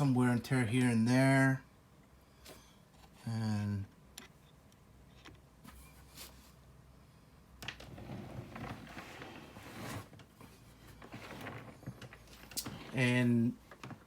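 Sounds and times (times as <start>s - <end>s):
rustling and rubbing: 5.6s - 6.7s, 7.9s - 13.1s.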